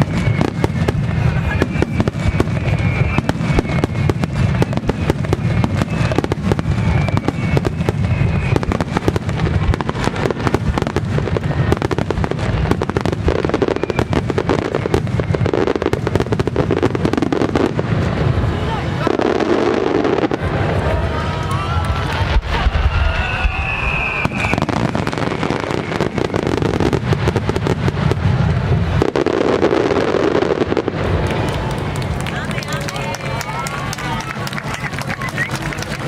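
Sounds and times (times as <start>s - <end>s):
fireworks launching and bursting: 0.0s - 36.0s
continuous low rumble: 30.7s - 36.0s.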